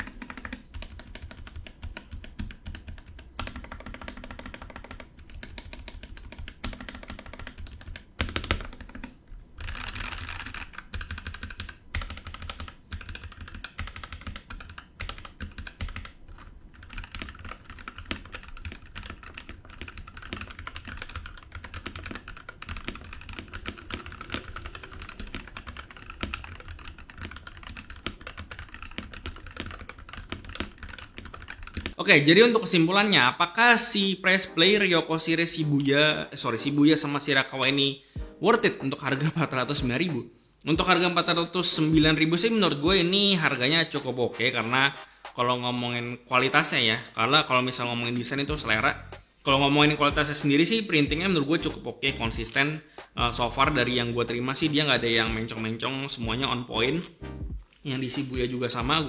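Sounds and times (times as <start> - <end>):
mechanical keyboard typing: 0.0 - 32.0.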